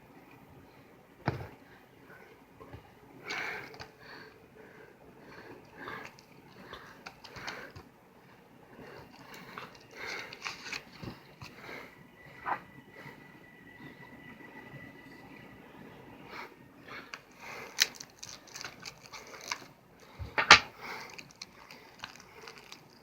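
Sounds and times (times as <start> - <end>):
plastic crinkling and rustling: 9.0 - 11.6, 17.1 - 23.0.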